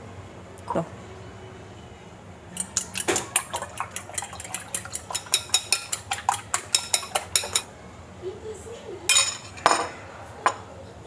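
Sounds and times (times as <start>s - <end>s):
spoon clinking against dish: 2.6s - 7.7s.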